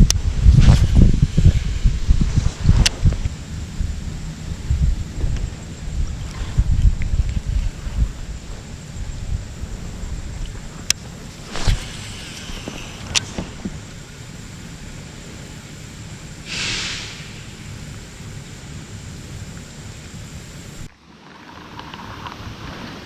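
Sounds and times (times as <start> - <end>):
wind rumbling on microphone: 0.0 - 23.0
short hiss: 11.4 - 14.6, 16.4 - 18.4.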